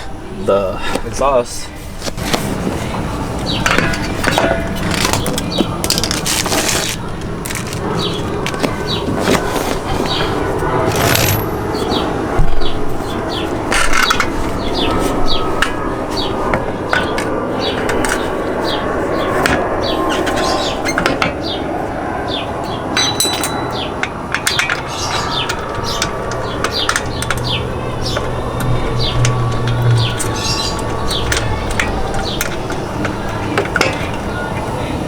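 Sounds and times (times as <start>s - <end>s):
steady background noise: 0.0s - 35.0s
small birds chirping: 2.2s - 35.0s
metal clinks: 10.9s - 11.6s, 23.0s - 34.2s.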